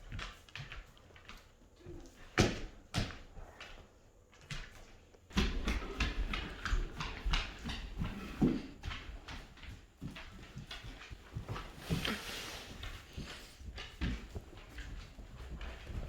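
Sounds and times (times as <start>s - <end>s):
dog rustling and shuffling: 5.0s - 16.0s.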